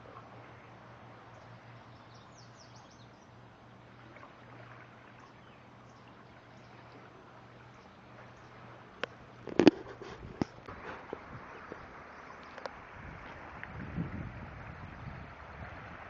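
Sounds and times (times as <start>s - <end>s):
faint outdoor noise: 0.0s - 16.0s
bird chirping: 1.3s - 3.3s.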